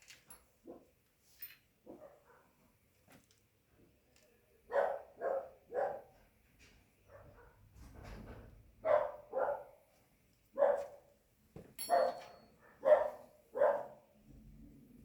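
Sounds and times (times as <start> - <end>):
dog barking: 1.9 - 2.6, 4.7 - 6.2, 7.1 - 7.6, 8.8 - 9.8, 10.6 - 11.0, 11.9 - 14.1.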